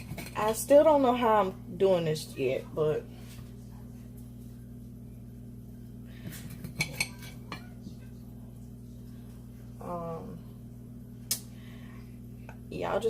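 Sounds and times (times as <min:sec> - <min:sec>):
kitchenware clinking: 0:00.0 - 0:00.6, 0:06.2 - 0:07.8
low hum: 0:00.0 - 0:13.0.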